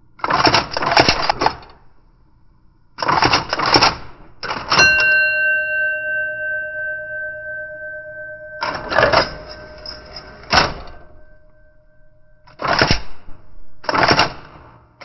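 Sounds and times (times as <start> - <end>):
electric typewriter typing: 0.2 - 1.7, 3.0 - 4.8, 13.8 - 14.6
typewriter bell chiming: 4.7 - 13.0.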